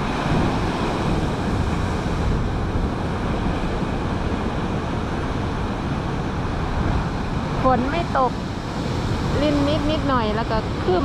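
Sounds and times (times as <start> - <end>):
waves breaking: 0.0 - 11.0
wind buffeting microphone: 0.0 - 11.0.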